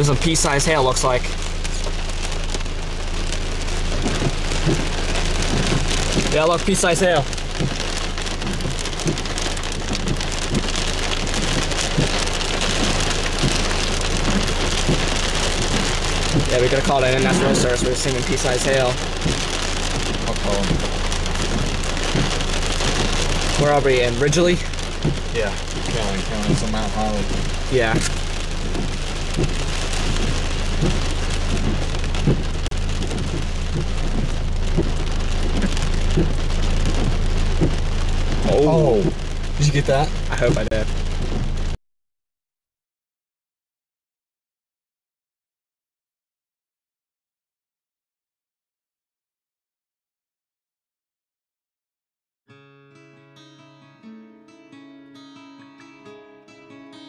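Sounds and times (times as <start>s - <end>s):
hailstones knocking on car: 0.0s - 41.6s
rain hissing on car: 0.0s - 41.8s
low hum: 16.0s - 40.8s.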